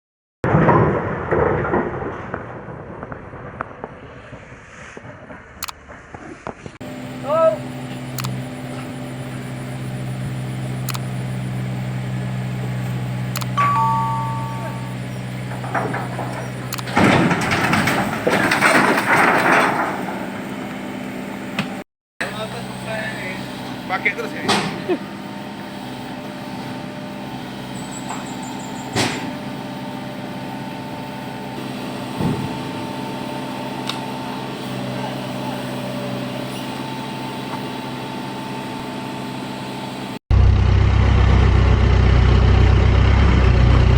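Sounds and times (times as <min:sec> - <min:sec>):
diesel engine running: 0:06.8 - 0:43.9
sharp high tone: 0:13.5 - 0:15.2
sharp metal clank: 0:13.6 - 0:15.3.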